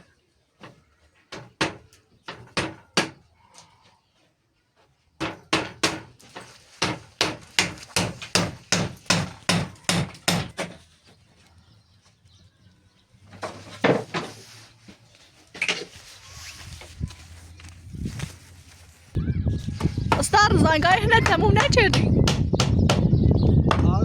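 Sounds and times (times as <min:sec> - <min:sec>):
hammer striking: 0:06.8 - 0:10.8.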